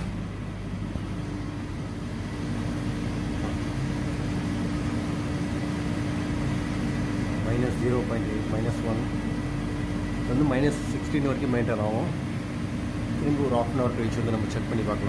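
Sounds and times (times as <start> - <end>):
refrigeration machinery humming: 0.0 - 15.0.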